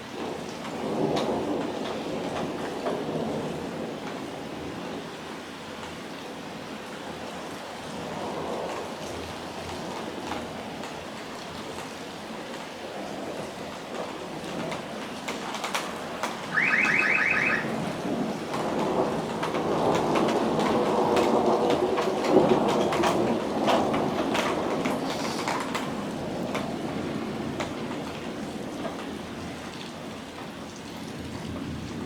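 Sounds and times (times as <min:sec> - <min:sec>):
rapid electronic beeping: 0:16.6 - 0:17.7
heavy rain hissing: 0:25.0 - 0:26.1.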